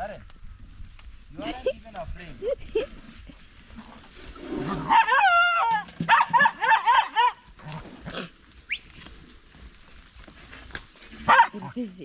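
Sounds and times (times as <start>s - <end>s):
dog yelping: 4.8s - 7.4s, 11.2s - 11.7s.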